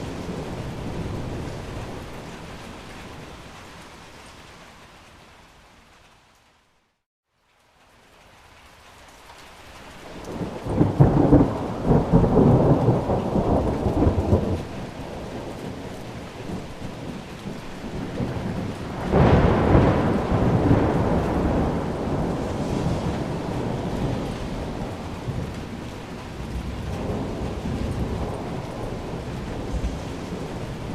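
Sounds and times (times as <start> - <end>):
thunder rumbling: 0.0 - 3.4, 10.2 - 30.9
heavy rain: 0.0 - 30.9.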